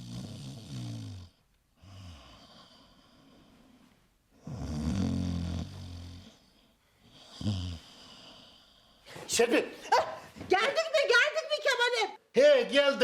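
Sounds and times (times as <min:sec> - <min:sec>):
man snoring: 0:00.0 - 0:02.9, 0:04.4 - 0:06.4, 0:07.2 - 0:08.6
quiet breathing: 0:00.0 - 0:09.3.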